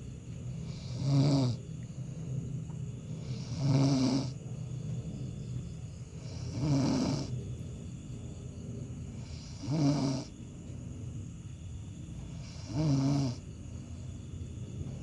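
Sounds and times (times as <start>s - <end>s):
man snoring: 0.7s - 1.6s, 3.2s - 4.4s, 6.2s - 7.3s, 9.2s - 10.3s, 12.3s - 13.4s.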